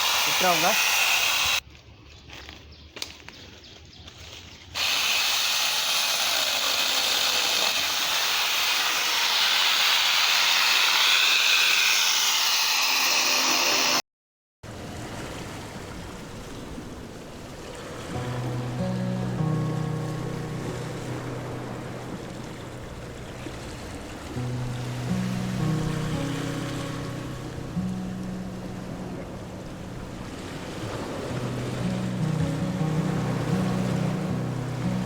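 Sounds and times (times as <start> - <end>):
angle grinder running: 0.0 - 1.6, 4.8 - 14.0.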